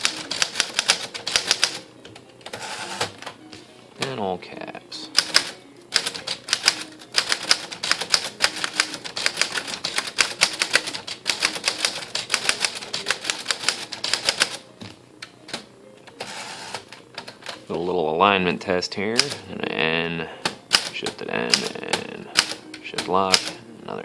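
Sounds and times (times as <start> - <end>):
typewriter typebar strikes: 20.4 - 23.6.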